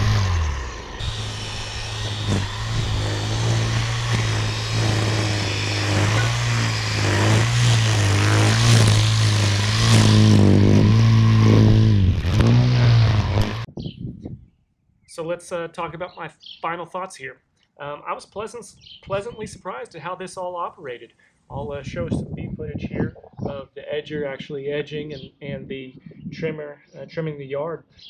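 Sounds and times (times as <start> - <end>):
battery trimmer motor hum: 0.0 - 13.7
rough cutting noise: 0.0 - 13.7.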